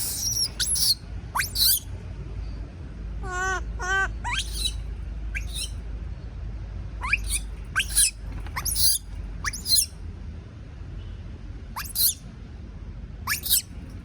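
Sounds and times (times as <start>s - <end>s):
baby monkey screaming: 0.0s - 1.9s, 3.2s - 4.8s, 5.4s - 5.8s, 7.0s - 9.9s, 11.8s - 12.2s, 13.3s - 13.7s.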